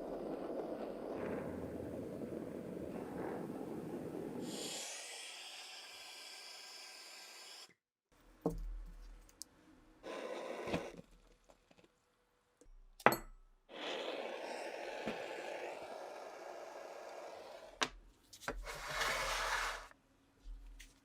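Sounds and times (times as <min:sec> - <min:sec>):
hand tool scraping: 0:18.6 - 0:19.9.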